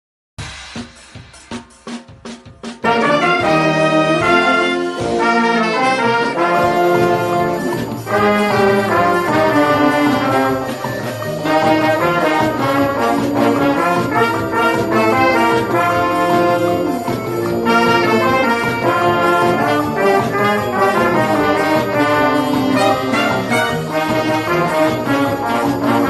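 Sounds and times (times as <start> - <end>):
orchestra playing festive tune: 2.8 - 26.0
trombones and trumpets: 2.8 - 26.0.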